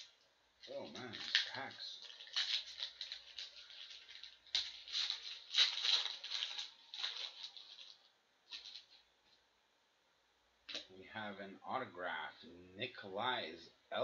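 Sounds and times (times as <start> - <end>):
card pack wrappers crinkling: 0.0 - 9.1.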